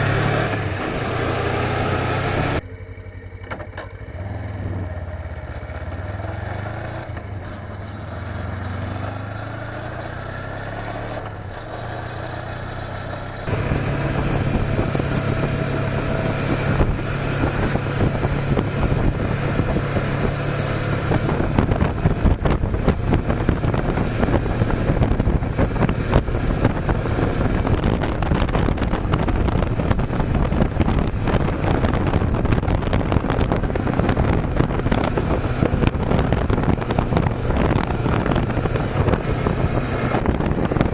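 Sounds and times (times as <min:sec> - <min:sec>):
wind buffeting on microphone: 0:00.0 - 0:02.6, 0:13.5 - 0:40.9
motorcycle engine revving: 0:00.0 - 0:40.9.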